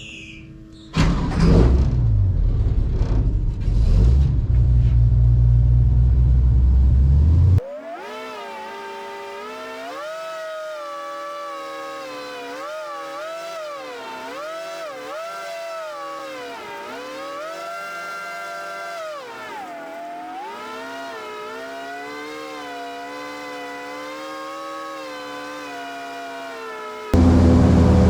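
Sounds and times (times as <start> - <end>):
loud airboat engine: 7.6 - 28.0.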